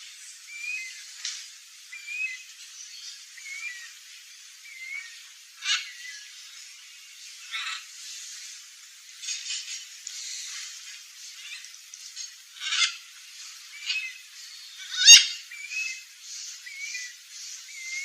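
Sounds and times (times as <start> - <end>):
steady hiss: 0.0 - 18.0
small bird chirping: 13.7 - 18.0.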